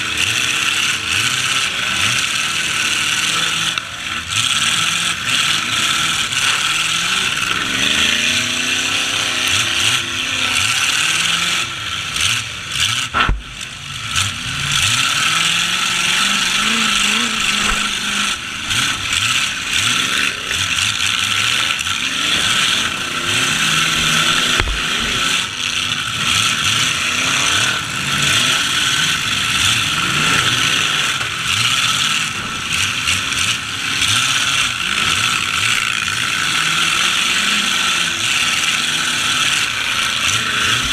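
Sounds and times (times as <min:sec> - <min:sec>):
truck engines revving: 0:00.0 - 0:40.9
sharp bang: 0:13.1 - 0:13.7.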